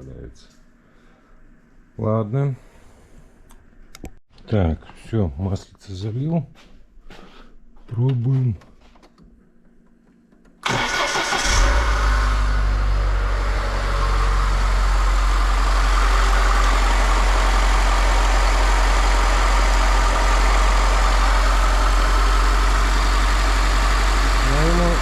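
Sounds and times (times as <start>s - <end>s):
car engine cranking and idling: 10.6s - 25.0s.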